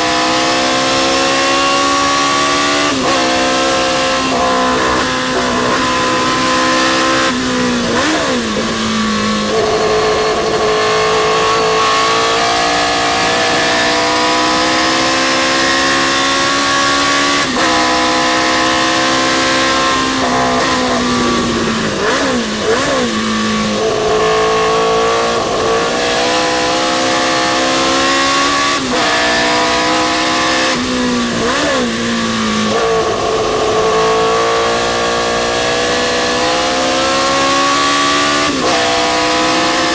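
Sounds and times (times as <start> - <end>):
racing car engine at high revs: 0.0 - 39.9.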